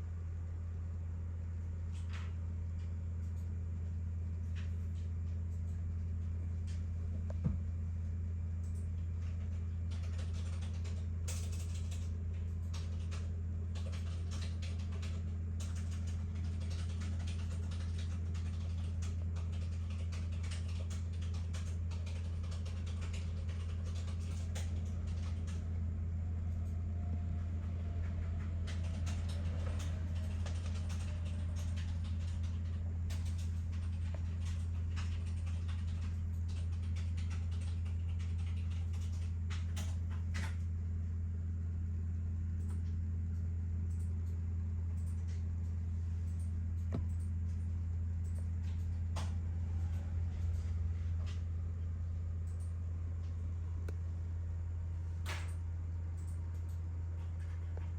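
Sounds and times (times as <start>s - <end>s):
steady low hum: 0.0s - 57.9s
small irregular clicks: 8.6s - 25.6s, 28.4s - 40.7s.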